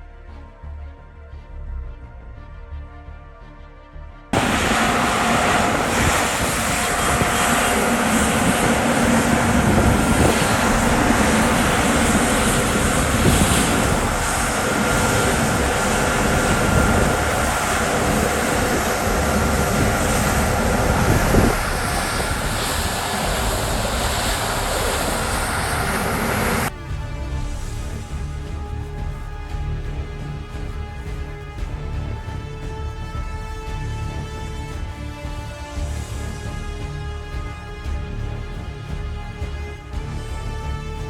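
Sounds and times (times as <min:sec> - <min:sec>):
faint high whine: 0:04.4 - 0:26.7
combine harvester running: 0:04.4 - 0:26.8.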